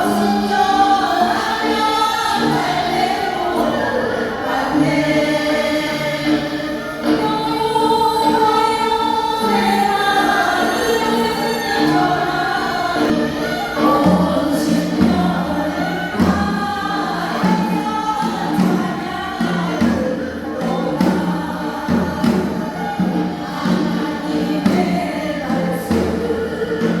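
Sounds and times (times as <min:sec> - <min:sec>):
choir singing worship song: 0:00.0 - 0:27.0.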